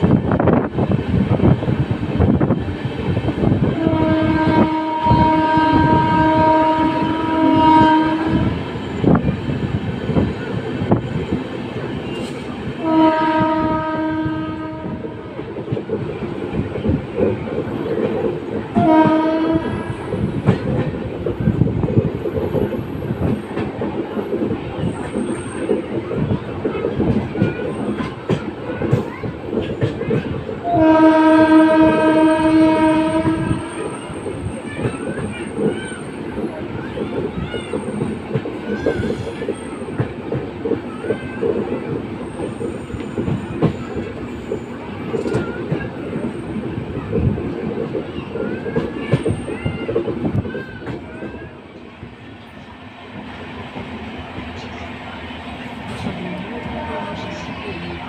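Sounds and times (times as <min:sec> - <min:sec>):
train coach clickety-clack: 0:00.0 - 0:58.0
locomotive horn blasts: 0:03.8 - 0:08.6, 0:12.8 - 0:15.2, 0:18.8 - 0:19.9, 0:30.6 - 0:33.9.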